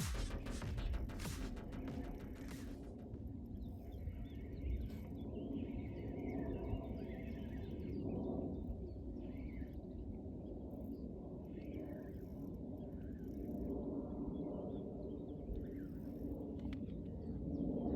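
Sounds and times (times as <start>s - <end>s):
steady low rumble: 0.0s - 7.2s.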